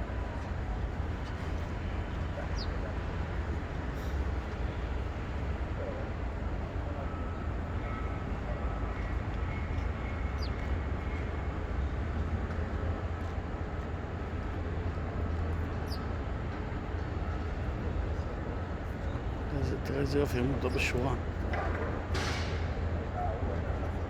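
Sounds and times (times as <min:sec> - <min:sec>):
sparrow chirps: 0:02.4 - 0:02.9, 0:09.0 - 0:10.7, 0:15.8 - 0:16.1.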